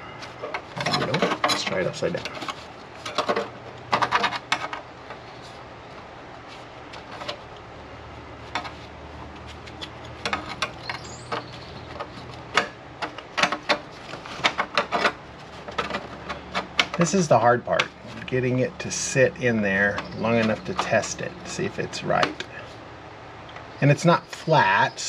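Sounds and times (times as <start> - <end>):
steady low hum: 0.0 - 25.0
sheet metal clicks and scrapes: 0.1 - 5.6, 8.5 - 17.1.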